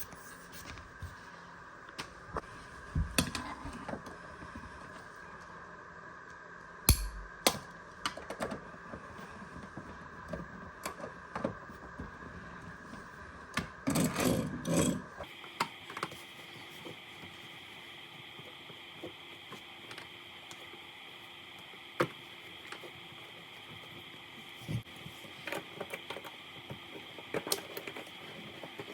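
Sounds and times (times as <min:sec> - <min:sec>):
steady hum: 0:06.9 - 0:07.6.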